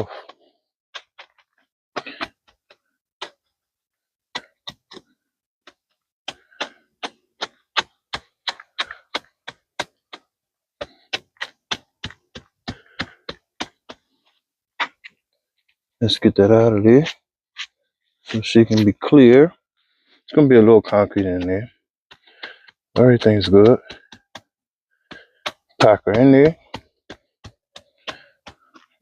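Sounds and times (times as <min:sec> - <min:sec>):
digging tool striking hard ground: 0:06.3 - 0:14.0, 0:18.3 - 0:19.5, 0:20.4 - 0:24.5, 0:25.1 - 0:29.0.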